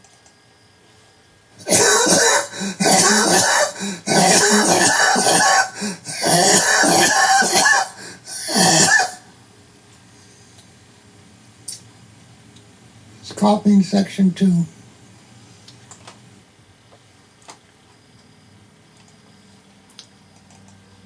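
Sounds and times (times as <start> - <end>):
man coughing: 1.6 - 9.3.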